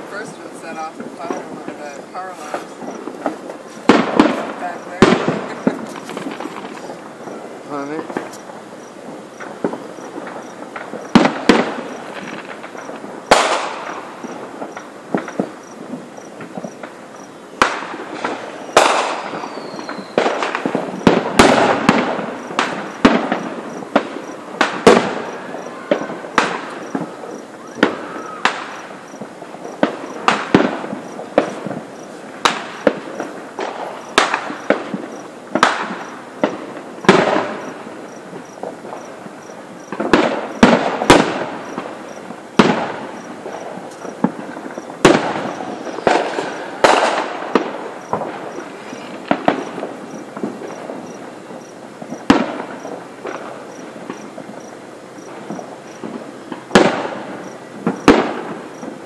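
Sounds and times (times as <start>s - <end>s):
firework shell bursts: 0.0s - 17.0s, 17.6s - 54.4s
fireworks crackling: 0.0s - 59.0s
falling whistle: 19.4s - 20.2s.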